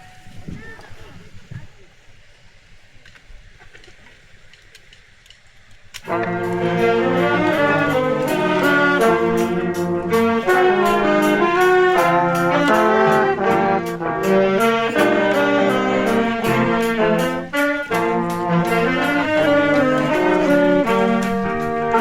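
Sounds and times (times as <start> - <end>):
steady drum beat: 6.0 - 22.0
wind band playing: 6.0 - 22.0.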